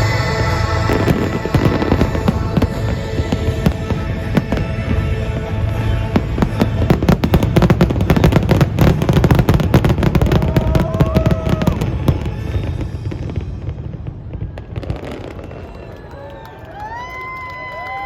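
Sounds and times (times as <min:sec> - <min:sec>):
music playing: 0:00.0 - 0:14.2
fireworks bangs and crackles: 0:00.0 - 0:18.0.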